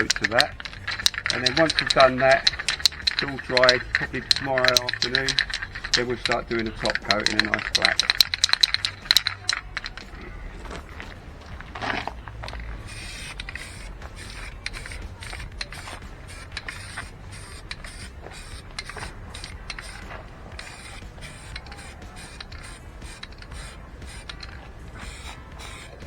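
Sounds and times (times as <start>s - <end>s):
aerosol can spraying: 0.0s - 26.0s
spray can clatter: 0.0s - 26.0s
spray can clicks and knocks: 0.0s - 26.0s.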